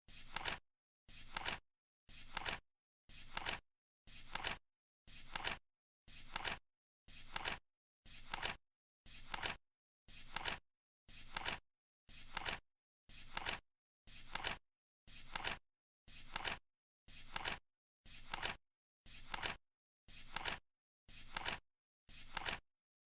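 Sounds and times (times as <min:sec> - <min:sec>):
flip clock card flipping: 0:01.3 - 0:02.6, 0:03.2 - 0:03.6, 0:04.2 - 0:04.6, 0:05.2 - 0:05.6, 0:06.3 - 0:06.6, 0:07.3 - 0:07.6, 0:08.2 - 0:08.6, 0:09.3 - 0:09.6, 0:10.3 - 0:10.6, 0:11.3 - 0:11.6, 0:12.3 - 0:12.6, 0:13.3 - 0:13.6, 0:16.3 - 0:16.6, 0:18.3 - 0:18.6, 0:19.3 - 0:19.6, 0:20.3 - 0:20.6, 0:21.3 - 0:21.6, 0:22.3 - 0:22.6.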